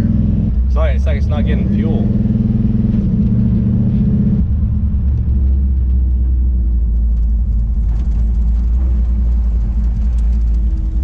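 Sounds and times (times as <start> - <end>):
car engine rumbling: 0.0 - 11.0.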